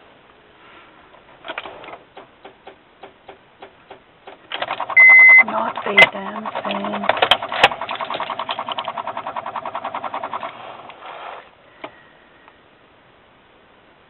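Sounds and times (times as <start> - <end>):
starter solenoid clicking: 1.5 - 11.0.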